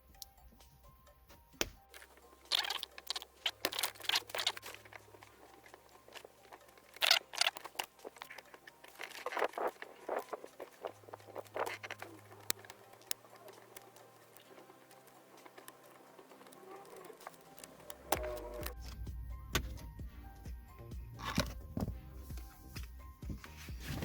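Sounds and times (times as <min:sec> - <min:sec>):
screwdriver scraping metal clip: 0:01.9 - 0:18.8.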